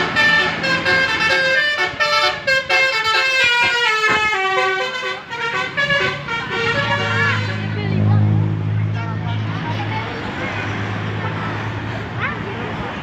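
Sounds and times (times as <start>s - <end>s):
bus horn playing melody: 0.0s - 7.9s.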